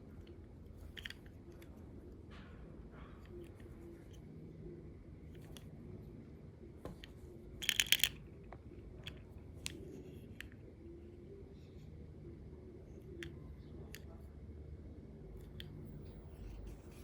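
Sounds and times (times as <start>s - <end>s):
faint low hum: 0.0s - 17.0s
small clicks: 7.0s - 8.2s.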